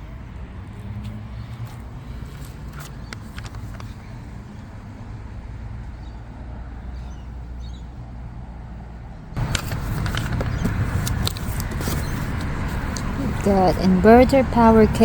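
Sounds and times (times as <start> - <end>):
car engine and road rumble: 0.0 - 15.0
noisy background: 9.4 - 15.0
scattered clicks and knocks: 9.4 - 15.0.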